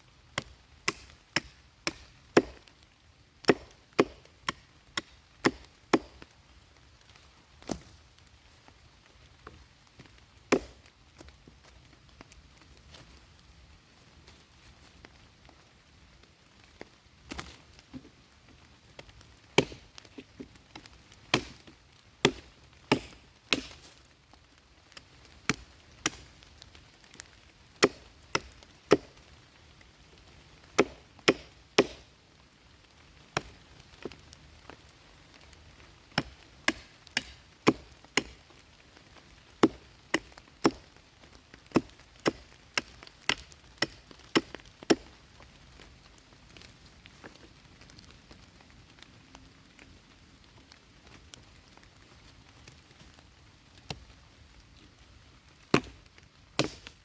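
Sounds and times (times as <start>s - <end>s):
blade chopping wood: 0.4s - 2.6s, 3.4s - 6.2s, 10.5s - 10.8s, 19.6s - 19.9s, 20.8s - 21.6s, 22.2s - 23.9s, 25.5s - 26.3s, 27.8s - 29.2s, 30.8s - 32.1s, 36.2s - 38.4s, 39.6s - 40.9s, 41.7s - 45.1s, 55.8s - 56.0s, 56.6s - 57.0s.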